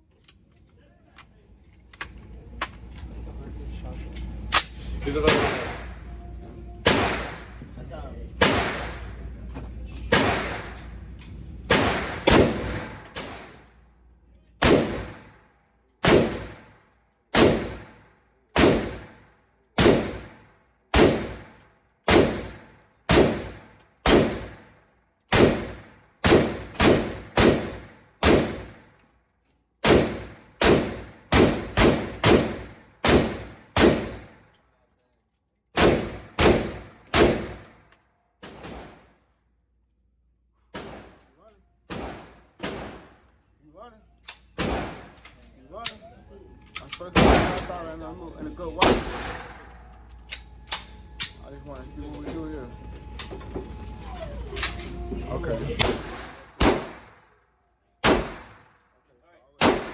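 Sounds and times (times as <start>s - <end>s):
gunshots with echo: 5.2s - 5.9s, 6.8s - 7.6s, 8.4s - 9.2s, 10.1s - 10.8s, 11.7s - 13.5s, 14.6s - 15.2s, 18.6s - 19.2s, 21.0s - 21.5s, 22.1s - 24.6s, 25.3s - 28.7s, 29.8s - 34.3s, 55.8s - 57.2s, 58.0s - 58.6s, 59.6s - 59.9s.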